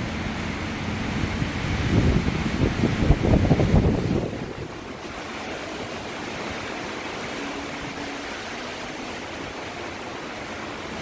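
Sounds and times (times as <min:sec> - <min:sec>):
strong wind rushing: 0:00.9 - 0:06.6.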